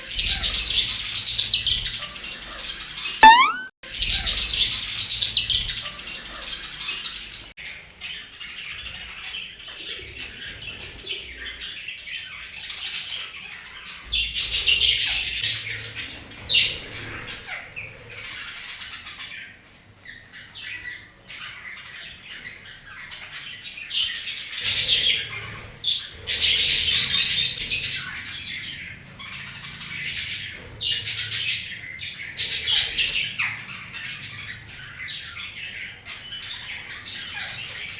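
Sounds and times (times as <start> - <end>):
budgies chirping and chattering: 0.0 - 3.2, 4.0 - 7.5, 24.8 - 37.9.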